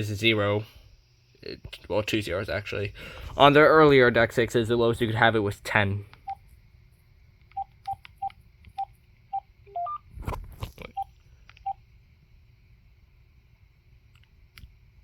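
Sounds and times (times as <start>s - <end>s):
phone key-press beeps: 7.5s - 8.9s.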